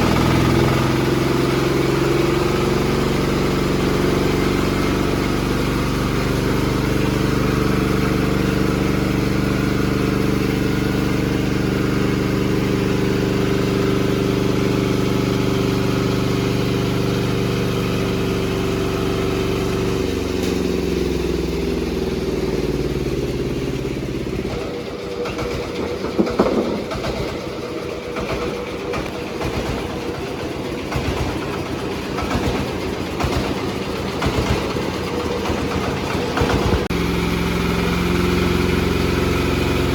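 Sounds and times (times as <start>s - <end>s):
sawmill engine running: 0.0s - 39.9s
sharp engine knocks: 24.4s - 37.0s.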